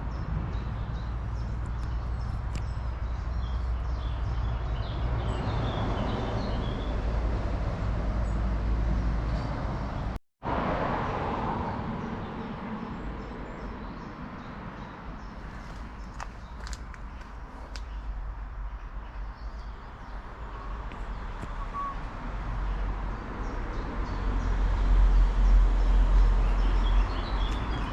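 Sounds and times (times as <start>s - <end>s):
road traffic rumbling: 0.0s - 27.9s
small birds chirping: 12.3s - 24.6s, 25.4s - 27.9s.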